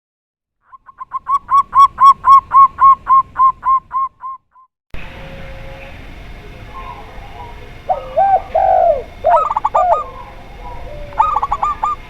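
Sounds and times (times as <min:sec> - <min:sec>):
steady background hiss: 0:05.0 - 0:12.0
dove cooing: 0:06.5 - 0:12.0.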